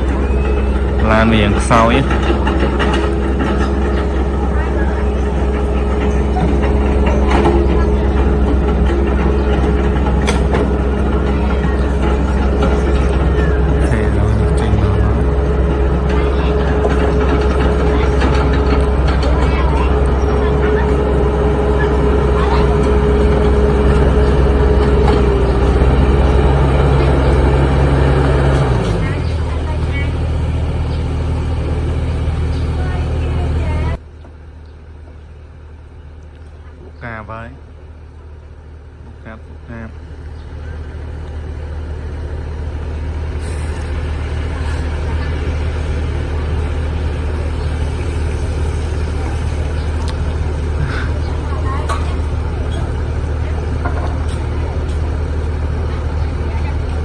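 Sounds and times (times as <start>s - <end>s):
steady whine: 0.0s - 29.1s
diesel machinery engines running: 0.0s - 57.0s.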